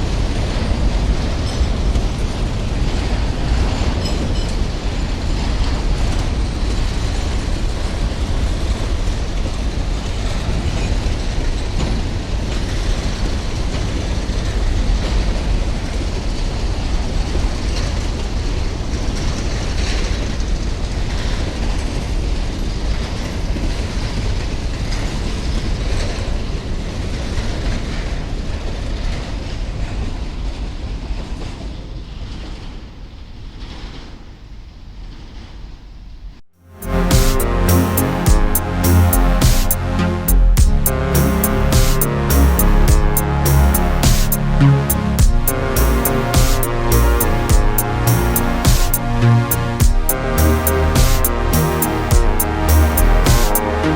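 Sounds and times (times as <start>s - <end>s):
train wagons rumbling past: 0.0s - 16.2s.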